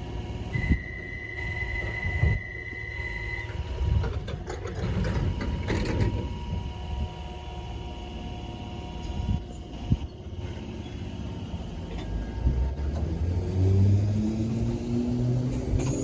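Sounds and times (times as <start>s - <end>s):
train rumble and clattering: 3.4s - 6.8s, 8.9s - 16.0s.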